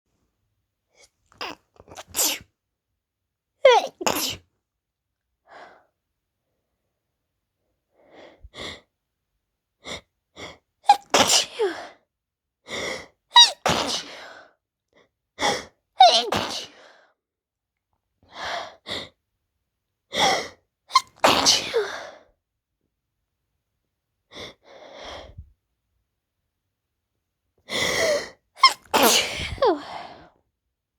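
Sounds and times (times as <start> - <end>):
woman sneezing: 3.7 - 4.4, 10.9 - 11.8, 13.4 - 14.1, 16.0 - 16.8, 20.9 - 21.9, 28.6 - 30.0.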